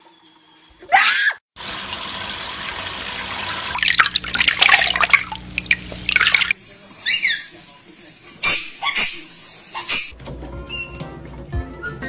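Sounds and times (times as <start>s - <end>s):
shower water spraying: 1.6s - 10.2s.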